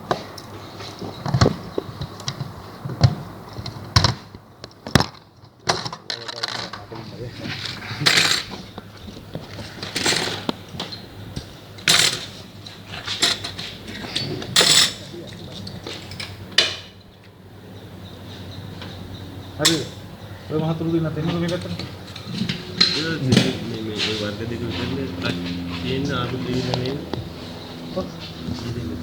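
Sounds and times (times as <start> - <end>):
metal tools clinking: 7.5 - 8.6, 11.8 - 17.2, 20.9 - 24.2.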